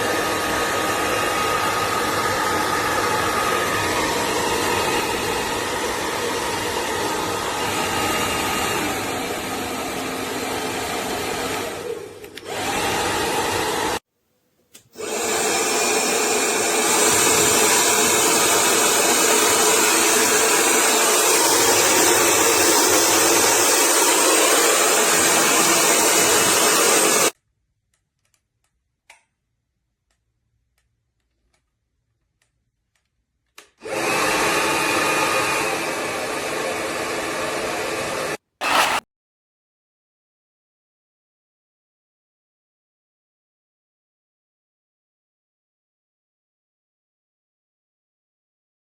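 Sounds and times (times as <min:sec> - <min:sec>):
hair dryer blowing: 0:00.0 - 0:14.0, 0:15.0 - 0:27.4, 0:33.8 - 0:39.0.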